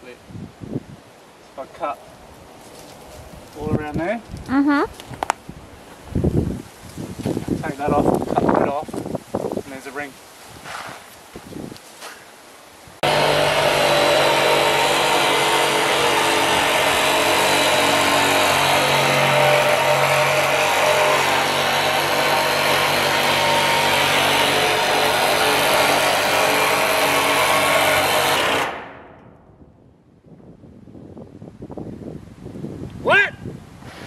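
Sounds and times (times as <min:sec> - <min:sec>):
power cutting tool running: 0:13.0 - 0:28.7.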